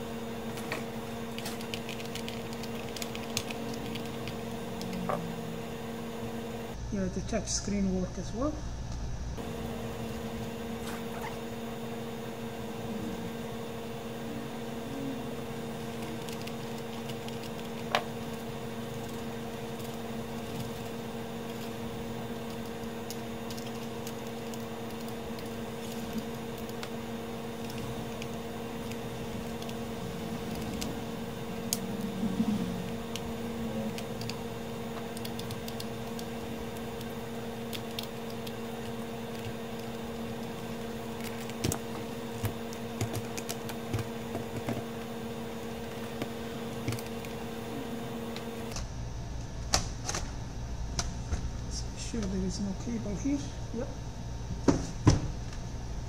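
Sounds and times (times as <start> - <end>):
electrical hum: 0.0 - 56.0.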